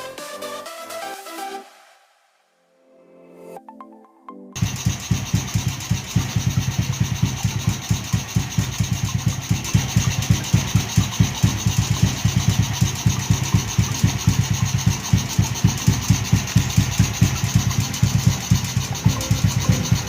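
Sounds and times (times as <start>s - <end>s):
motorcycle engine idling: 4.6s - 20.0s.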